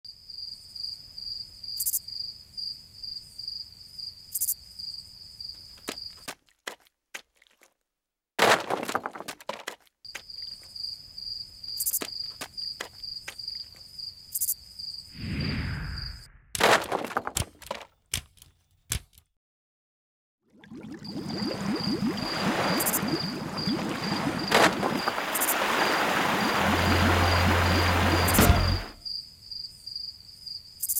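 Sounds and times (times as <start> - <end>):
broad rushing sound: 23.9 - 29.0.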